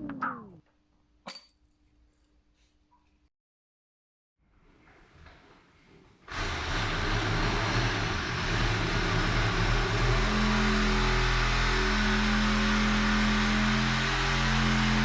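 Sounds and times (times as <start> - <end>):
engine starting and running: 6.3 - 15.0.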